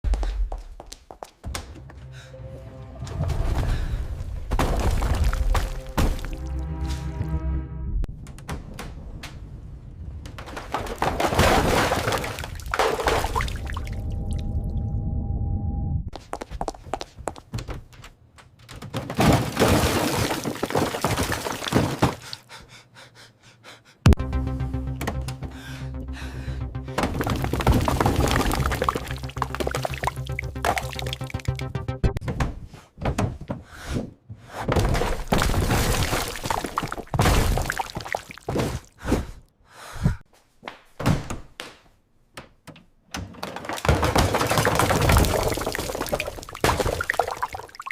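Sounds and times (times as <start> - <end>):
music: 1.5 - 4.2, 5.2 - 8.1, 24.2 - 32.2.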